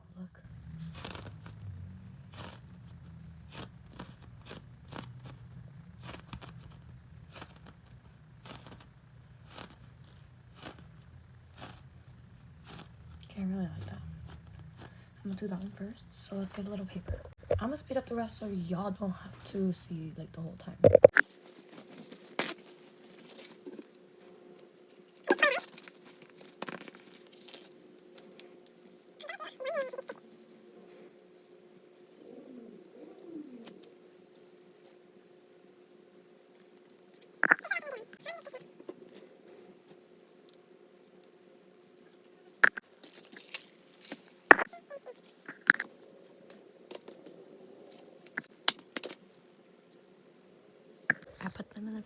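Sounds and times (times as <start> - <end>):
faint low hum: 0.0 - 52.0
craft material crinkling: 0.5 - 15.9, 20.8 - 31.1, 42.6 - 49.3
tissue paper crinkling and tearing: 0.7 - 1.7, 3.5 - 13.0, 21.2 - 24.1.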